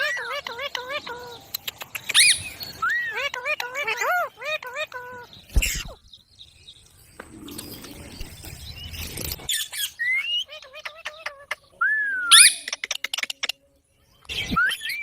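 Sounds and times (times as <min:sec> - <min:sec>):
parrot chirps and whistled calls: 0:00.0 - 0:06.0, 0:08.8 - 0:13.5, 0:14.3 - 0:15.0.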